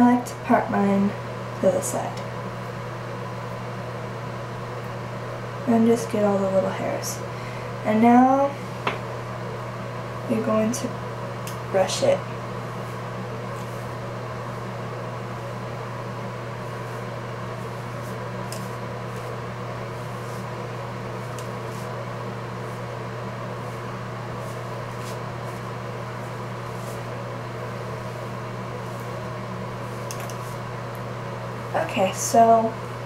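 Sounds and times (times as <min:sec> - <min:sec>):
low mechanical hum: 0:00.0 - 0:33.0
hairbrush stroking wet hair: 0:12.6 - 0:15.6, 0:16.5 - 0:33.0.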